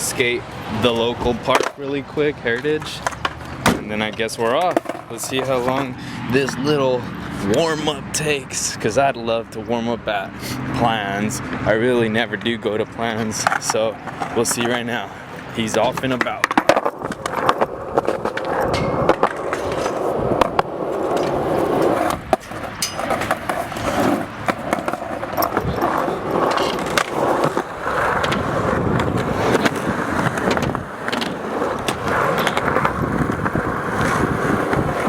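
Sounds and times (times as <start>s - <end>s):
skateboard wheels rolling: 0.0s - 35.0s
skateboard clacks and knocks: 0.4s - 6.6s, 13.2s - 14.9s, 15.6s - 35.0s.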